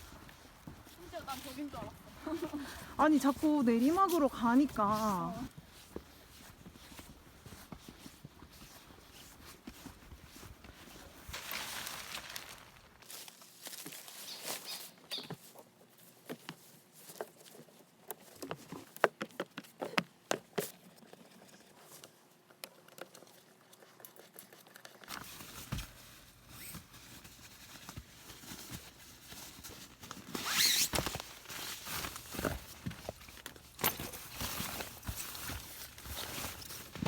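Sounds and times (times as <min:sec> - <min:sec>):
footsteps on a trail: 0:00.0 - 0:15.4
loud rustle: 0:10.9 - 0:14.9.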